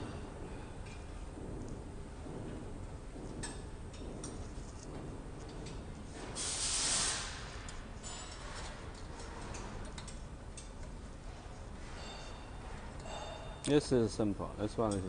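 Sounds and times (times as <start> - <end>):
short hiss of air: 6.4 - 7.7.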